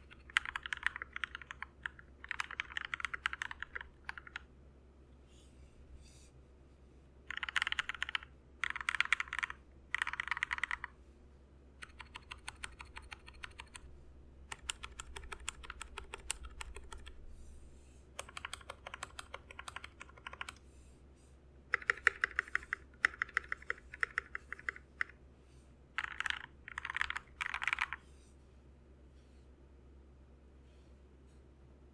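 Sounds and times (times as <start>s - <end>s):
mechanical keyboard typing: 0.0s - 4.4s, 7.3s - 10.9s, 11.8s - 13.9s, 14.5s - 17.2s, 18.2s - 20.6s, 21.7s - 25.2s, 26.0s - 28.0s.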